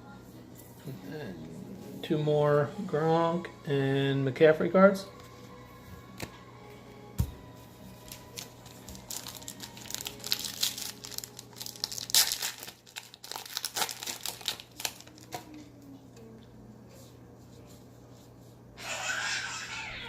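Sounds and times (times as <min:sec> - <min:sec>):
foil wrapper tearing and crinkling: 0:08.0 - 0:15.6.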